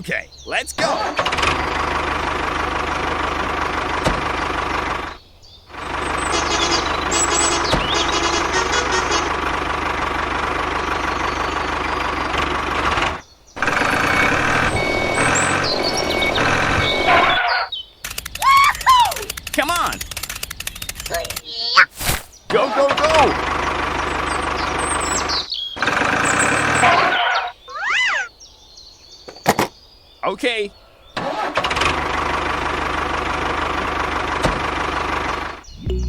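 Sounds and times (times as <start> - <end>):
small motor running: 1.2 - 17.4, 18.0 - 21.4.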